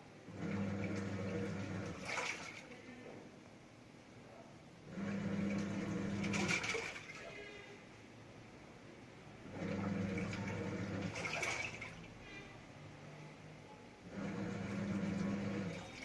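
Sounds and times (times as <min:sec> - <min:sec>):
washing machine motor humming: 0:00.0 - 0:03.1, 0:04.7 - 0:07.6, 0:09.2 - 0:12.7, 0:14.0 - 0:16.0
water churning and splashing: 0:00.3 - 0:02.9, 0:05.0 - 0:07.4, 0:09.4 - 0:12.2, 0:14.1 - 0:16.0.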